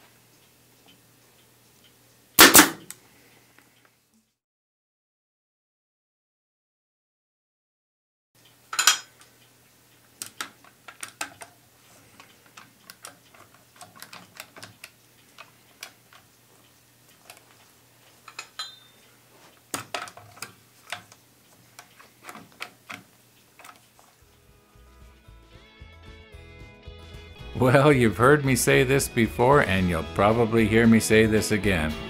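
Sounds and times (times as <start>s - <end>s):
clamps and wood clicking: 10.2s - 18.8s, 19.5s - 24.2s.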